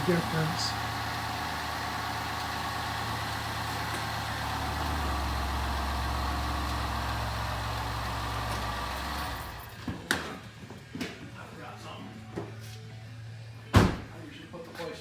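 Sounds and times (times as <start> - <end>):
car engine idling: 0.0 - 9.8.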